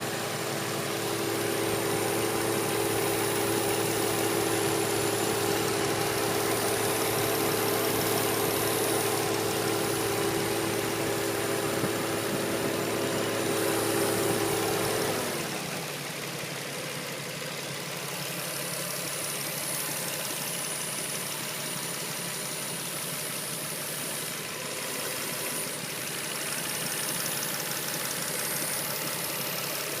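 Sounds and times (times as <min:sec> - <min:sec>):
car engine idling: 0:00.0 - 0:30.0.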